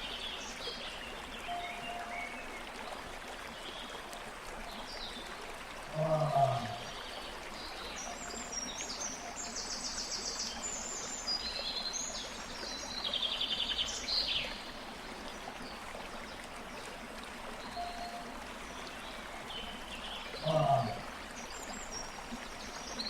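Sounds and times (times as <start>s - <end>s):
running water hiss: 0.0s - 23.0s
birds chirping and trilling: 1.4s - 2.7s, 17.6s - 22.1s.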